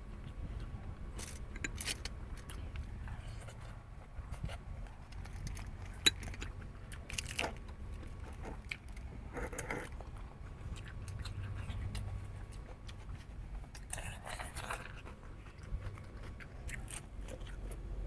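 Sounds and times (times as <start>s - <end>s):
low steady hum: 0.0s - 18.0s
person chewing and biting: 0.6s - 18.0s
wet clicks and crunches: 4.9s - 10.0s.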